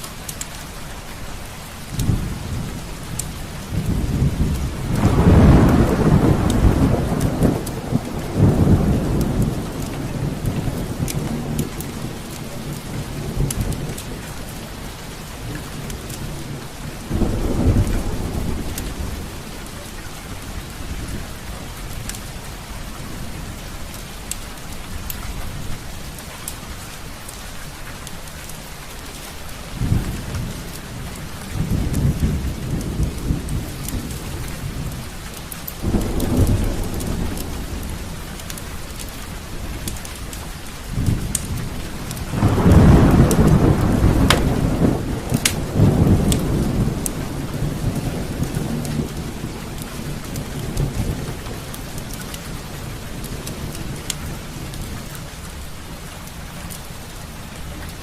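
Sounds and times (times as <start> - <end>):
steady rain: 0.0 - 58.0
thunder rumbling: 1.8 - 24.0, 29.6 - 58.0
sharp crackles: 32.8 - 47.2.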